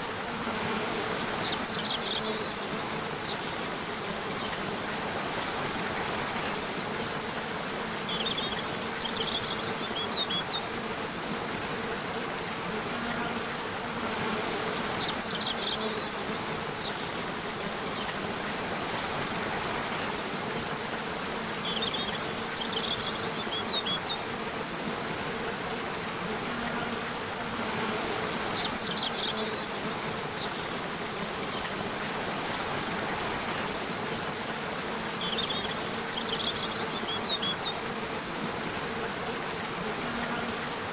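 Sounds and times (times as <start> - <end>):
flowing water rush: 0.0 - 40.9.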